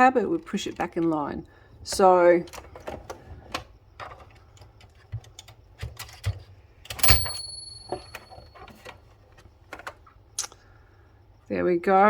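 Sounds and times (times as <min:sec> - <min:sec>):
typewriter bell ring: 0:07.0 - 0:08.6.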